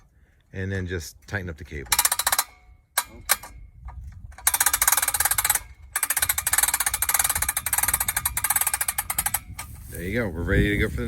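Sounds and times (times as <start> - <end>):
cordless drill winding winch: 1.9 - 9.7.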